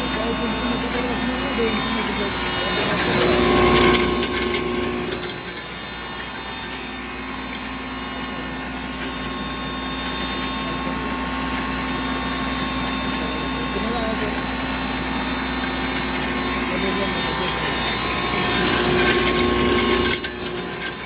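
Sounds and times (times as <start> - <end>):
grinding machine humming: 0.0 - 21.0.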